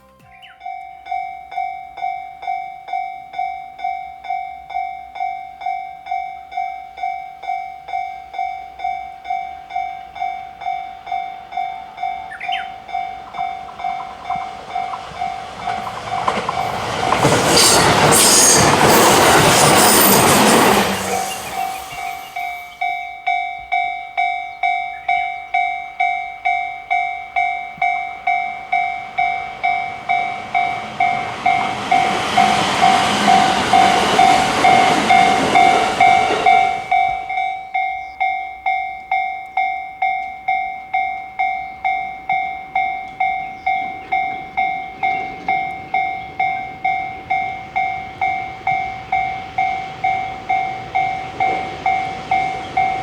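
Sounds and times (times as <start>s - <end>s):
train rushing past: 11.0s - 23.0s, 27.0s - 37.6s, 43.2s - 53.0s
level crossing bell ringing: 19.2s - 53.0s.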